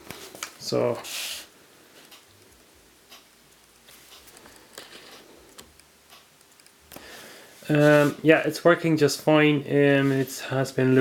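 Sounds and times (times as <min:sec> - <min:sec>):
brief hiss: 0:01.0 - 0:01.5.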